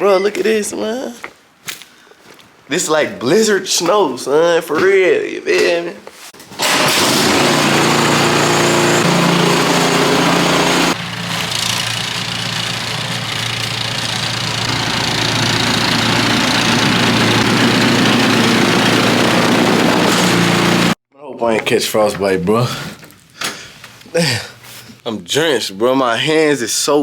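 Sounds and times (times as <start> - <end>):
engine running: 6.6 - 21.0.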